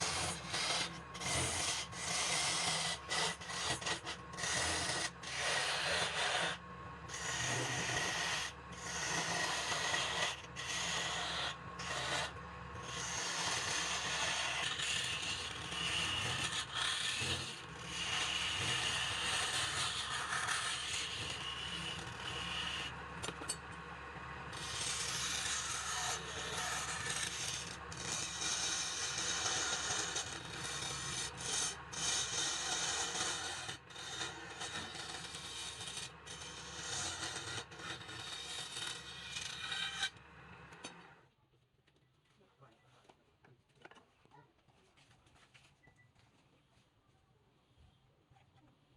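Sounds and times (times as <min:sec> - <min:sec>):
turning tool scraping spinning wood: 0:00.0 - 0:23.8, 0:24.5 - 0:41.1
low motor hum: 0:03.1 - 0:28.4.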